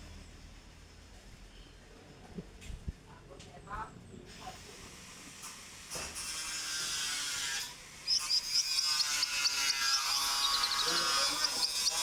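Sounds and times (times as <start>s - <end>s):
fast high-pitched bird chips: 8.0s - 12.0s
songbird singing: 8.0s - 12.0s.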